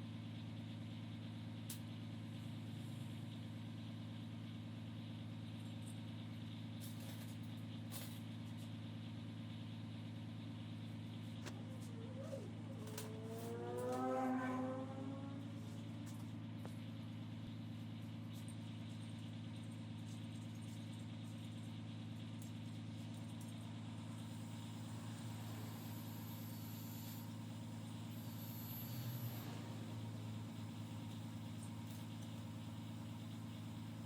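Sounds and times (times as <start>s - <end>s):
low mechanical hum: 0.0s - 34.0s.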